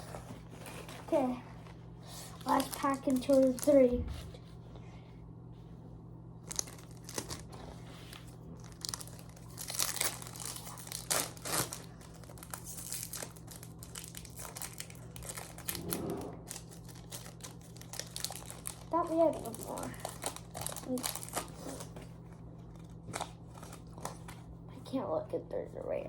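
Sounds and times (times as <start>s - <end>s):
steady low hum: 0.0s - 26.0s
foil wrapper crinkling and tearing: 2.0s - 3.9s, 6.4s - 24.5s.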